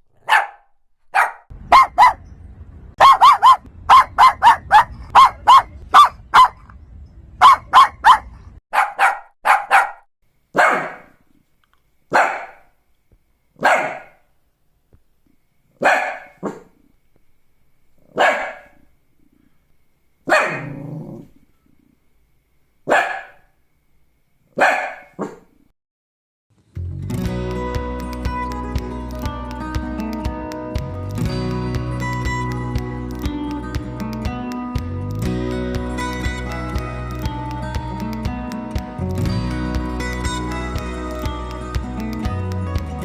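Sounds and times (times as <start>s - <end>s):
dog barking sharply: 0.2s - 2.2s, 3.0s - 6.6s, 7.4s - 11.2s, 12.1s - 12.7s, 13.6s - 14.2s, 15.8s - 16.7s, 18.1s - 18.8s, 20.3s - 20.8s, 22.9s - 23.5s, 24.6s - 25.5s.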